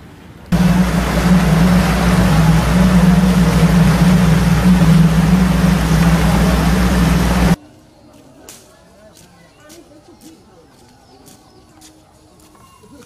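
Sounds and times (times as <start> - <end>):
motorboat engine running: 0.5 - 7.6.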